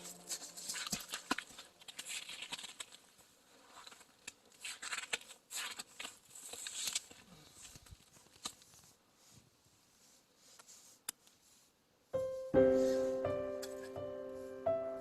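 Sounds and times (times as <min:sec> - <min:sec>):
footsteps crunching in snow: 0:00.0 - 0:02.7.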